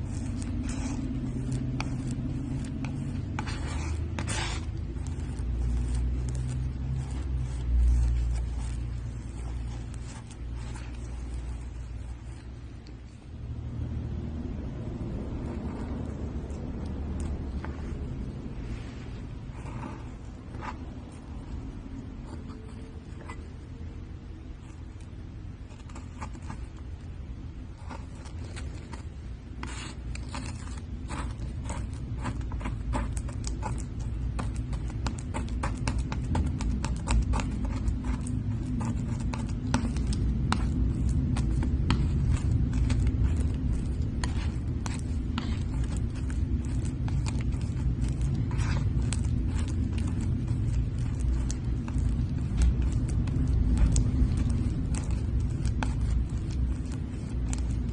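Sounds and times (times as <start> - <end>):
low rumble: 13.1 - 22.9
slime crackling and popping: 32.8 - 57.9.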